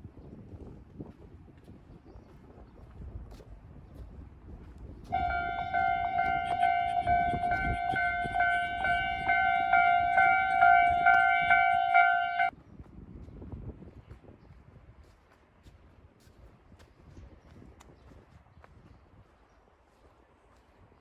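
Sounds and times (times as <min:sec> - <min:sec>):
railroad crossing bell ringing: 0:05.2 - 0:12.5.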